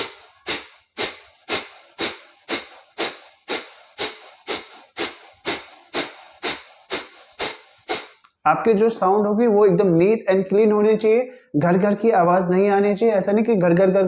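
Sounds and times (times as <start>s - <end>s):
forceful nasal exhalations: 0.0s - 8.3s.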